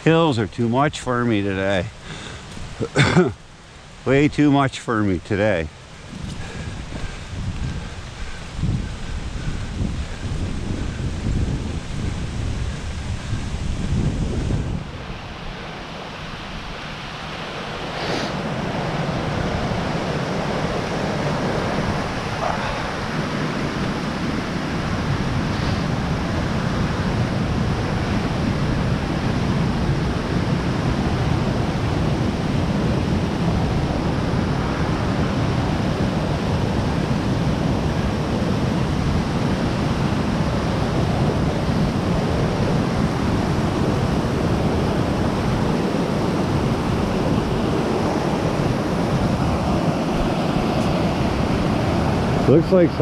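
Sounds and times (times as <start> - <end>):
fast-flowing stream rushing: 14.8 - 53.0.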